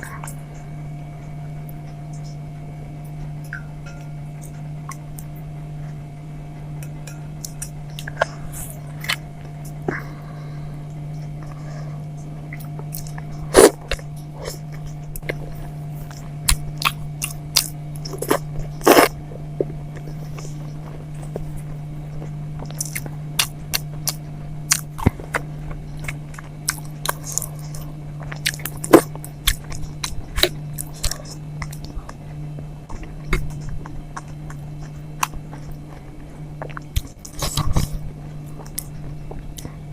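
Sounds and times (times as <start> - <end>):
steady low hum: 0.0 - 39.9
wet chewing and smacking: 6.8 - 10.1, 11.2 - 39.8.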